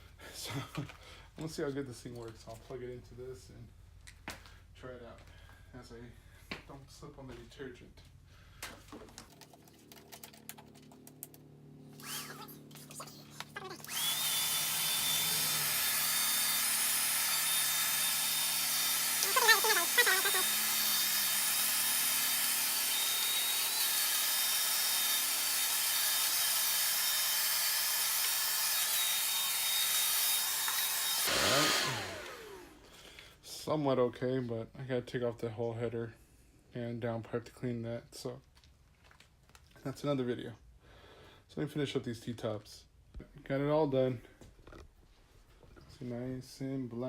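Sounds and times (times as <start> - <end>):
vacuum motor winding down: 11.8 - 32.9
handheld vacuum whining: 11.9 - 33.2.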